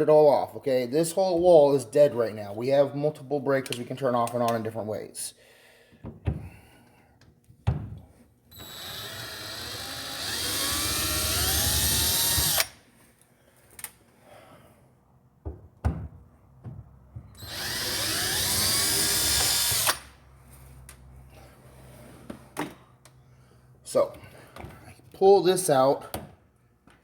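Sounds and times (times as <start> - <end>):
electric drill whining: 8.5 - 12.8, 17.4 - 20.1.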